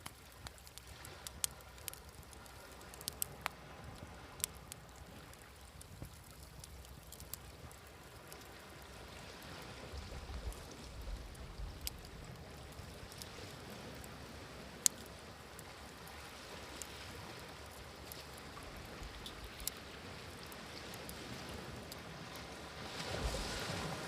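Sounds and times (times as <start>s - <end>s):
wood fire crackling: 0.0s - 24.0s
sea waves: 7.7s - 24.0s.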